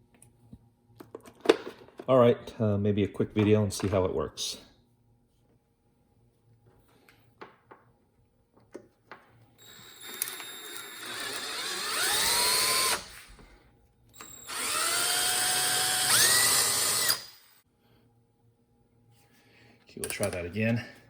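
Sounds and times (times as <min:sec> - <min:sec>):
power drill with hole saw whining: 0:09.6 - 0:13.3, 0:14.2 - 0:17.6.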